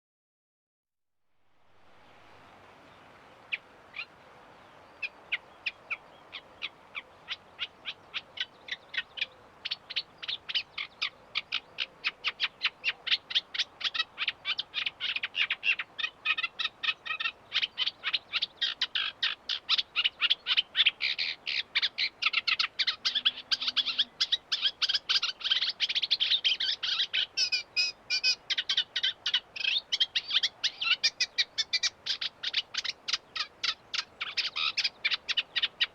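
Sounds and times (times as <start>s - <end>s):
faint steady hiss: 1.3s - 35.9s
warbler singing: 2.9s - 35.9s.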